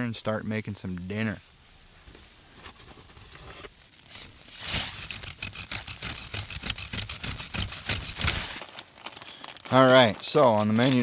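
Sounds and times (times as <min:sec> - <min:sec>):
twigs snapping and crackling: 0:03.9 - 0:11.0.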